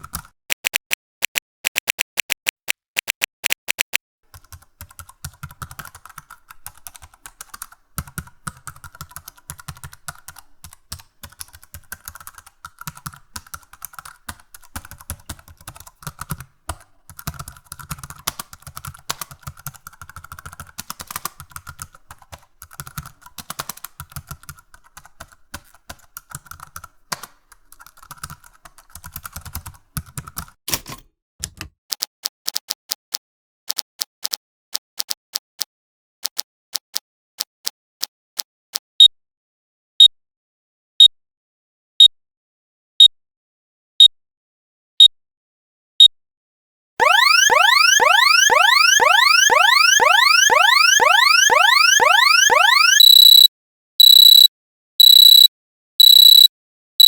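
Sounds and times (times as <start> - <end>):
rapid even clicks: 0.0 - 28.8
keyboard typing: 0.0 - 32.7, 47.0 - 56.5.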